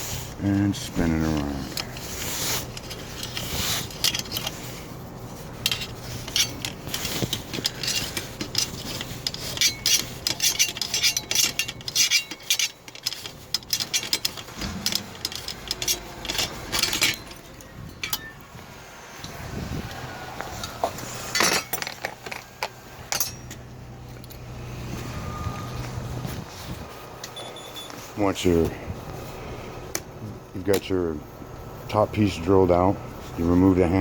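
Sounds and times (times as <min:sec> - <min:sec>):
wrench scraping metal ring: 0:01.0 - 0:18.4, 0:20.8 - 0:24.4, 0:27.2 - 0:28.1.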